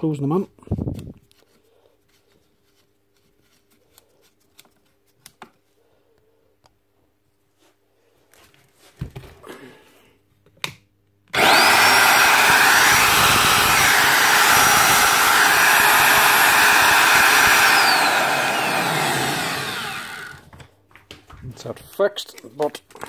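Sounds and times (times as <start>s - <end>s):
drill motor whining: 11.4s - 20.5s.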